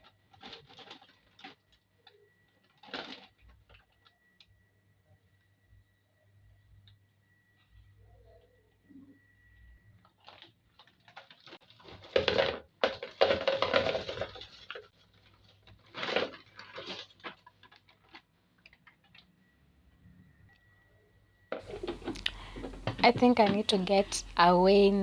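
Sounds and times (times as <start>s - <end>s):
wrapped sweets clicking and rustling: 0.0s - 4.5s, 10.0s - 19.4s, 21.6s - 25.0s
sweets clattering in container: 21.6s - 25.0s.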